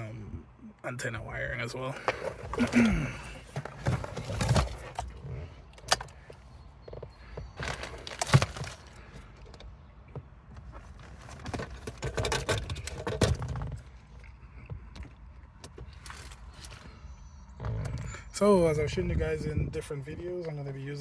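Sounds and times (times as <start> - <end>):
wires rustling and rattling: 2.0 - 9.8, 10.6 - 14.3.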